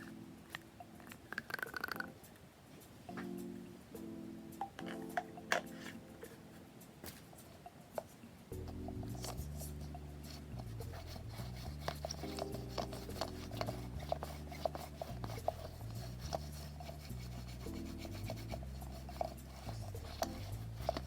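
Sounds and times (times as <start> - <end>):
background music with low chords: 0.0 - 21.0
lint roller rubbing over fur: 8.6 - 21.0.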